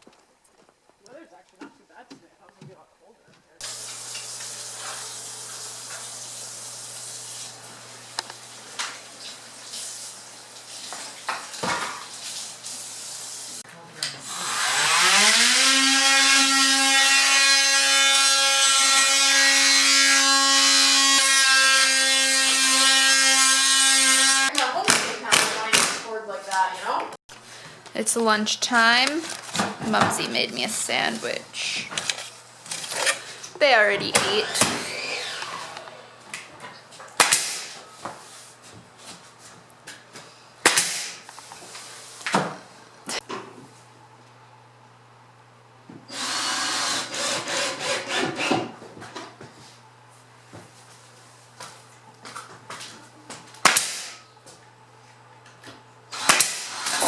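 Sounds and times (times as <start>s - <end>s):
power tool motor whining: 14.3s - 24.5s, 34.0s - 36.1s, 46.1s - 48.7s, 56.1s - 57.0s.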